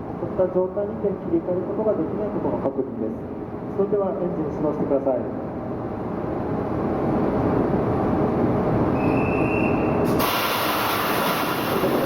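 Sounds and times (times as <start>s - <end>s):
thin whistle: 9.0s - 10.2s
rush of hiss: 10.1s - 12.0s.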